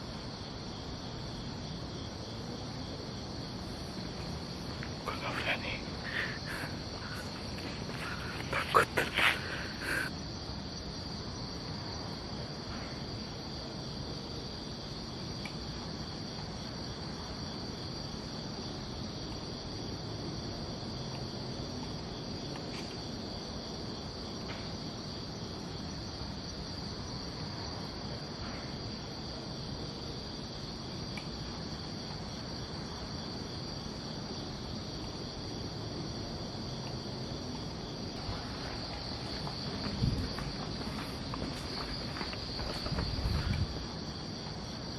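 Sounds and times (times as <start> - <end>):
crickets trilling: 0.0 - 44.9.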